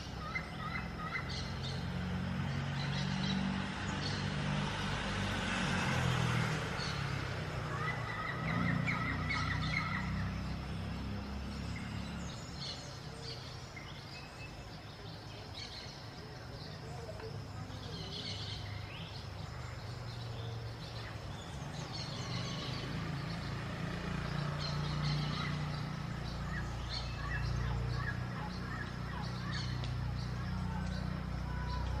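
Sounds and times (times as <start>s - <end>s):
parakeets chirping: 6.8s - 12.8s, 24.2s - 31.6s.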